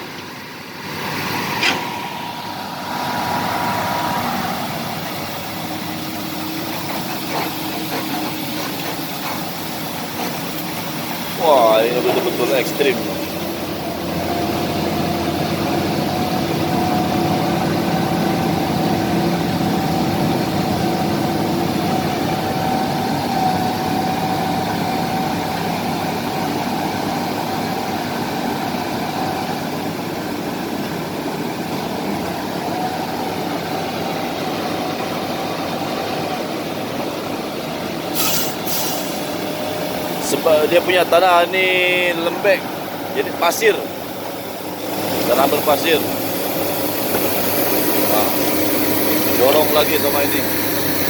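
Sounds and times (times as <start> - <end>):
high steady whine: 0.0 - 28.1
bulldozer diesel engine: 0.0 - 51.0.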